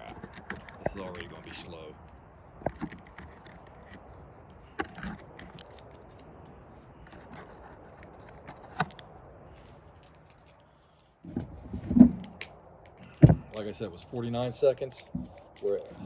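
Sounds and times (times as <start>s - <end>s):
firearm reload clicks and scrapes: 0.0s - 1.8s, 2.6s - 9.1s.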